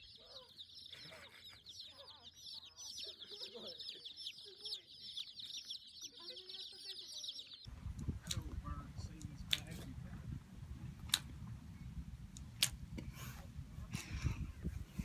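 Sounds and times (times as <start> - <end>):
chicks peeping: 0.0 - 9.8
chickens clucking: 0.0 - 10.0.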